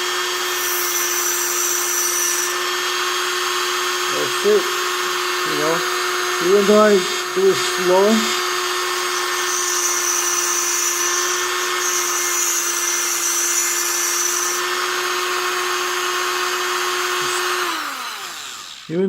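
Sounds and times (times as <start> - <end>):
grinder motor whine: 0.0 - 19.0
motor spinning down: 14.1 - 19.0
high grinding hiss: 16.9 - 19.0.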